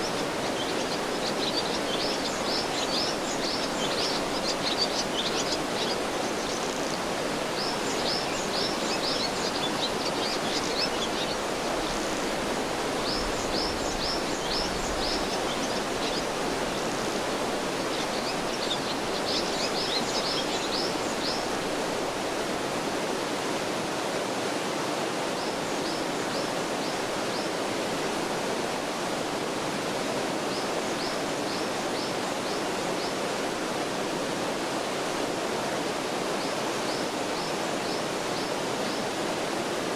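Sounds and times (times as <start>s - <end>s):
small bird singing: 0.0s - 11.4s
stream running: 0.0s - 39.9s.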